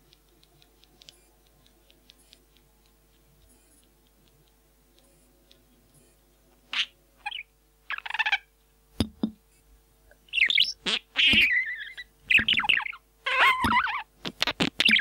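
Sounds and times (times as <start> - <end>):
parrot chirping and whistling: 6.7 - 8.5, 10.3 - 14.1, 14.8 - 15.0.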